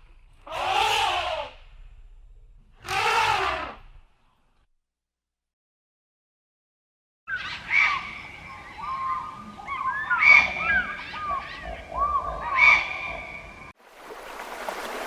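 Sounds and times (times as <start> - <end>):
birds calling: 7.3 - 13.7.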